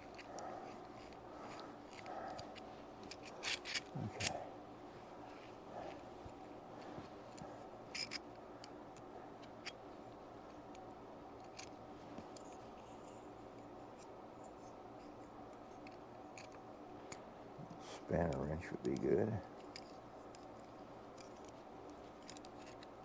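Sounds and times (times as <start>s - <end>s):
small metal parts clicking: 0.0s - 4.4s, 7.9s - 8.2s
steady low hum: 0.0s - 23.0s.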